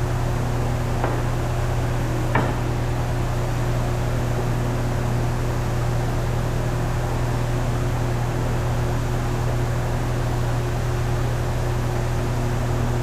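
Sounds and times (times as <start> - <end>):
woodworking machinery hum: 0.0 - 6.7
short knock: 1.0 - 1.5, 2.3 - 2.8.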